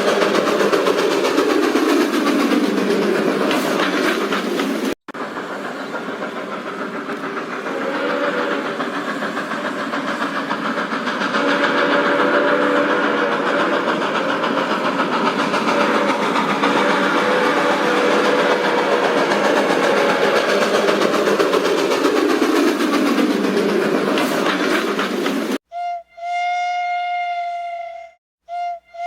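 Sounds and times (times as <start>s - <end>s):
steam locomotive clatter: 0.0s - 25.6s
low steam whistle blasts: 7.5s - 10.2s, 11.0s - 14.8s, 15.6s - 21.0s, 25.7s - 29.0s.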